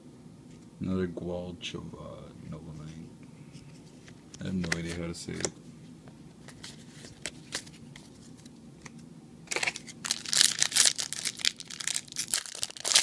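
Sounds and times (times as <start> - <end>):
foil wrapper crinkling and tearing: 9.5 - 13.0.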